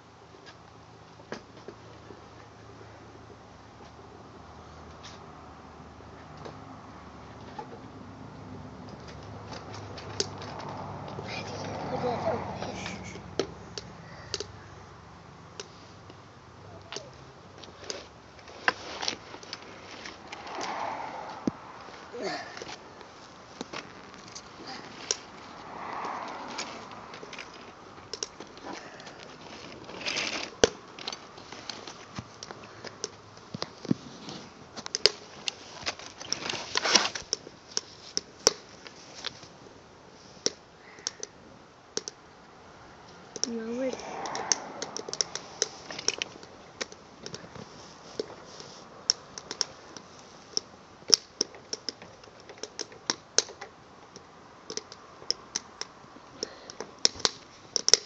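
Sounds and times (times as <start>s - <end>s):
burning log crackling and popping: 16.8s - 42.2s, 43.0s - 58.0s.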